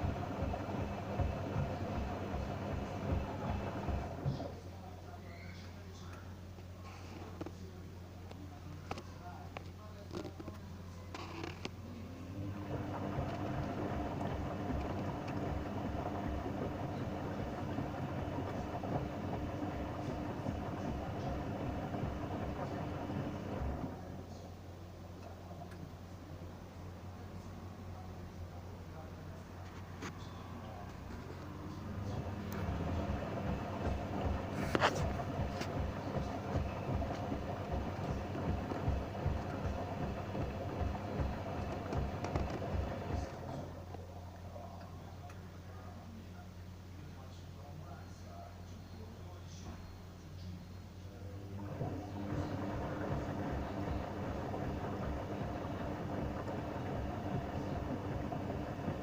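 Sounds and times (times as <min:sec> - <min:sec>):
drum rumbling: 0:00.0 - 0:04.5, 0:12.5 - 0:24.0, 0:31.8 - 0:43.8, 0:51.6 - 0:59.0
washing machine thumping: 0:00.0 - 0:04.5, 0:32.6 - 0:43.3
washing machine motor hum: 0:00.0 - 0:26.0, 0:28.9 - 0:46.0, 0:51.0 - 0:59.0.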